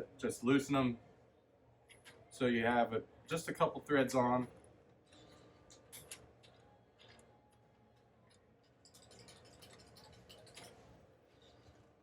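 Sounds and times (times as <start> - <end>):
faint metallic ticks and scrapes: 4.4 - 12.0.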